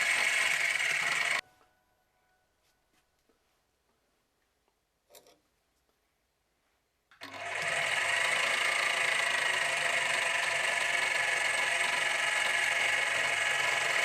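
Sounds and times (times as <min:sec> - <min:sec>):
machine tool motor whining: 0:00.0 - 0:01.4, 0:07.2 - 0:14.0.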